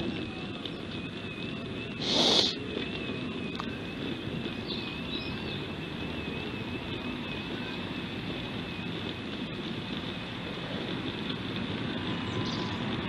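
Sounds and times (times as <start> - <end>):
car engine and tyres rumbling: 0.0 - 13.0
brief rushing burst: 2.0 - 2.6.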